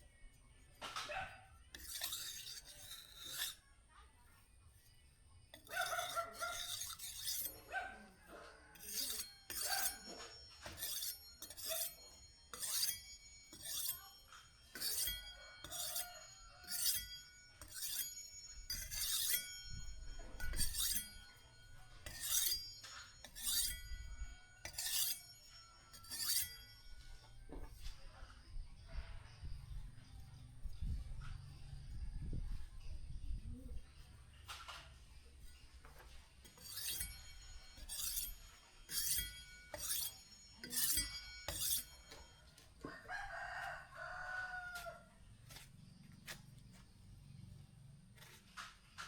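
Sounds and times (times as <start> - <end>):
ringing metallic strokes on steel: 1.6 - 32.0, 35.3 - 43.5.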